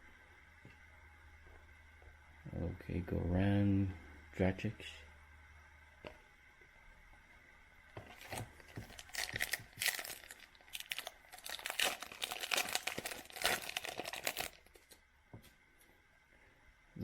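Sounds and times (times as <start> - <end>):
foil wrapper tearing and crinkling: 8.1 - 15.0.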